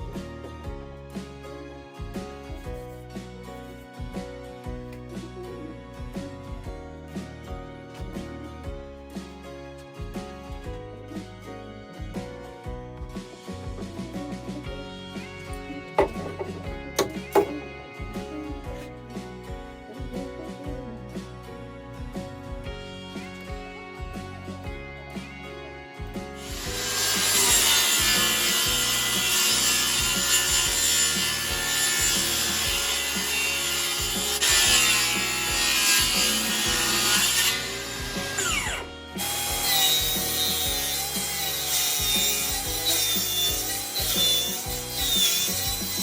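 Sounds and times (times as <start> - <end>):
power tool cutting wood: 14.9 - 18.5, 26.2 - 46.0.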